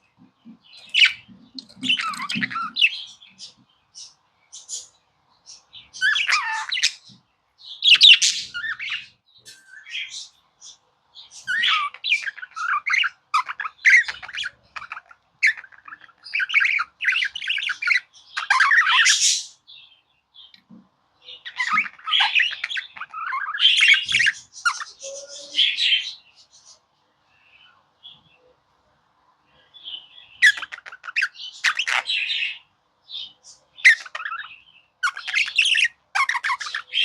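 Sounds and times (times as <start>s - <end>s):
budgerigar warbling: 0.8s - 3.1s, 6.0s - 7.0s, 30.4s - 32.6s.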